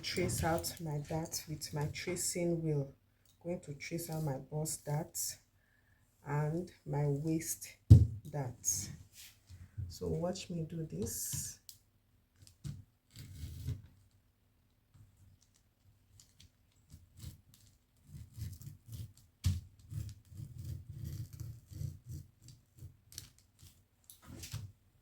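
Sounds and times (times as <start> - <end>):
tracing wheel rasping on fabric: 19.8 - 22.9.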